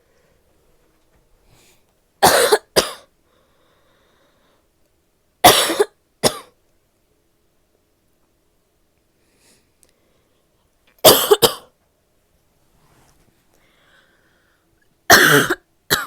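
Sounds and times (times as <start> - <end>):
woman coughing: 2.2 - 3.1, 5.4 - 6.5, 11.0 - 11.7, 15.1 - 16.0.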